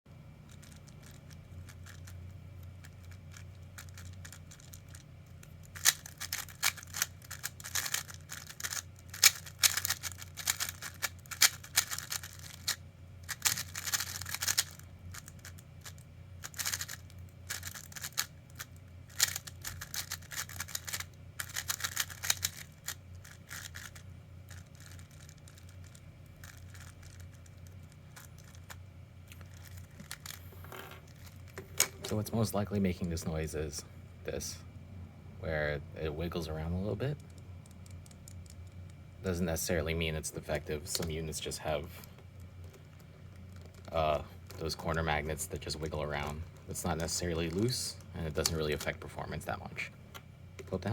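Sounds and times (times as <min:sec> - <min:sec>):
steady low hum: 0:00.1 - 0:50.9
clicking and rattling: 0:00.5 - 0:02.2, 0:02.8 - 0:32.2, 0:42.0 - 0:44.7.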